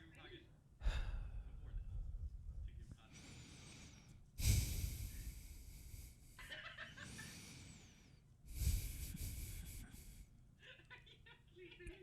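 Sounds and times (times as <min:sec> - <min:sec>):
man breathing slowly: 0:00.8 - 0:02.2, 0:03.0 - 0:10.4.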